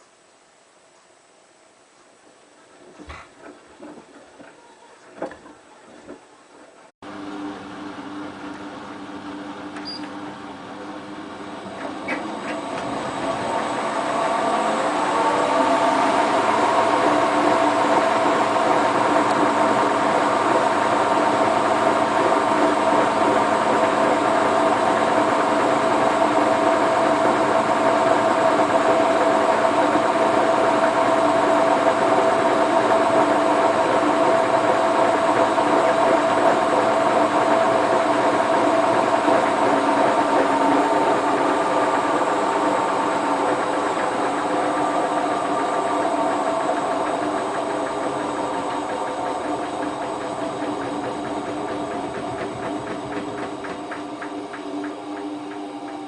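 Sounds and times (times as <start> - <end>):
washing machine spinning: 7.0 - 56.0.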